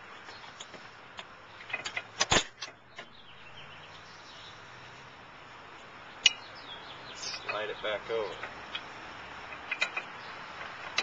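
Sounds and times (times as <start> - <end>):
faint bird chirps: 6.2 - 8.0.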